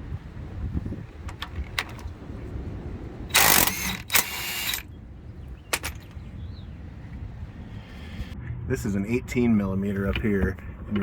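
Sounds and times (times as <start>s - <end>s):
socket wrench ratcheting: 3.3s - 4.9s.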